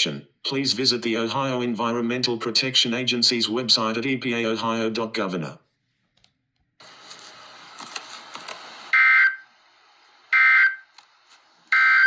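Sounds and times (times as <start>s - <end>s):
faint hiss with crackles: 6.8s - 9.0s.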